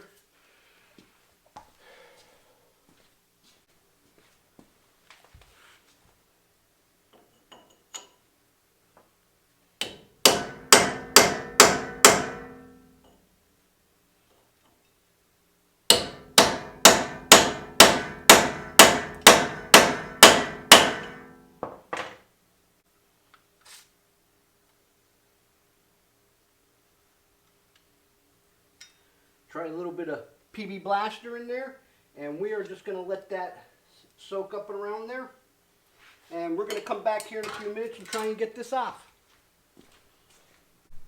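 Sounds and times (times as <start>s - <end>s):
hammer pounding on metal: 9.8s - 12.9s, 15.9s - 21.4s.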